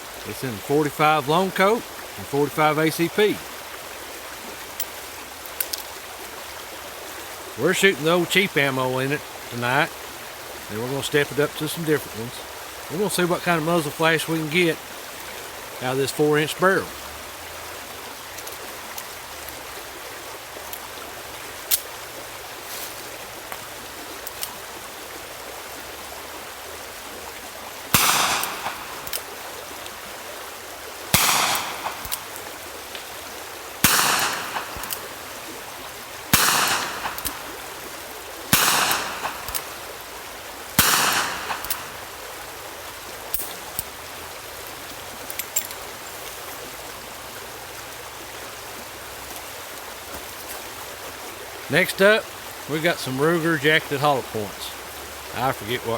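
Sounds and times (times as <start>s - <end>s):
faint clicks: 4.7s - 5.9s, 36.4s - 37.6s, 38.6s - 39.8s
revolver shots echoing: 28.0s - 29.2s, 31.2s - 32.4s, 33.8s - 35.2s, 36.3s - 37.6s, 38.5s - 39.8s, 40.8s - 42.2s.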